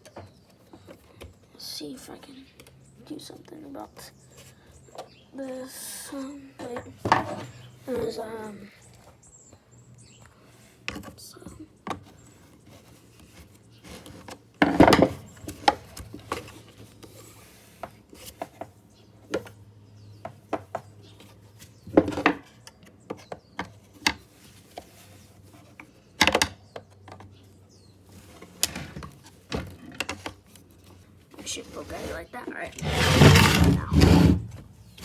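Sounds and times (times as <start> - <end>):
hand tool knocking and scraping: 32.7 - 34.6.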